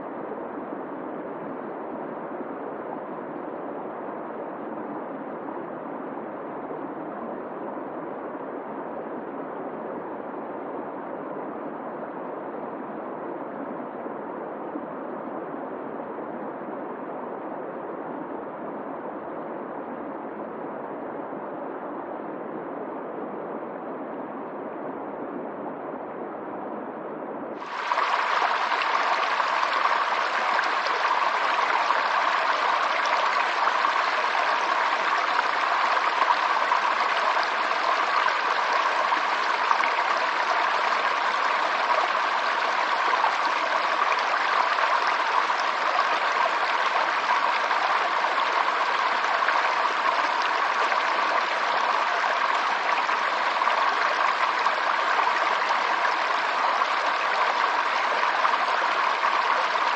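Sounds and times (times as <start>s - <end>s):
waterfall rushing: 27.6s - 41.3s.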